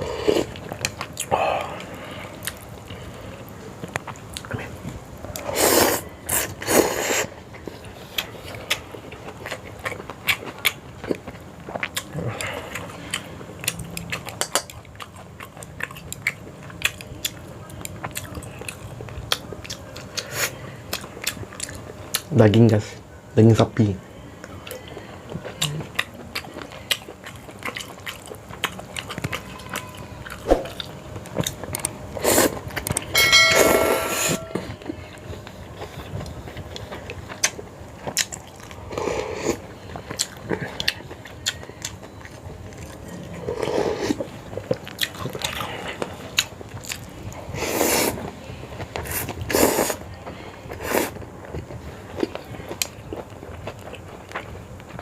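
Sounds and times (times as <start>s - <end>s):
person chewing and slurping noodles: 0.0s - 3.2s, 4.0s - 22.3s, 24.7s - 33.1s, 34.7s - 55.0s
utensil clink: 33.2s - 34.9s.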